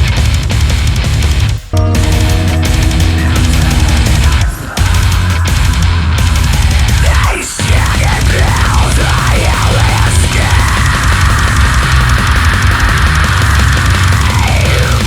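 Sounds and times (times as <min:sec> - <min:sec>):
loud background music: 0:00.0 - 0:15.0
swooping pitch glides: 0:01.8 - 0:06.8.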